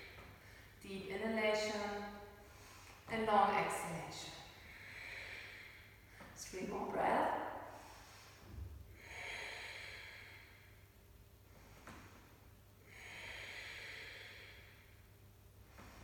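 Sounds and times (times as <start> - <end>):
person breathing slowly: 4.6 - 6.4, 7.7 - 10.9, 11.5 - 15.1.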